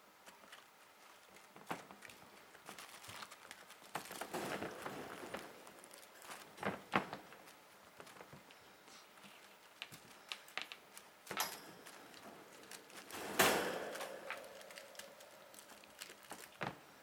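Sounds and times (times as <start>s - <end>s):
kittens scuffling: 0.2s - 16.8s
paws and claws tapping floor: 9.2s - 16.8s.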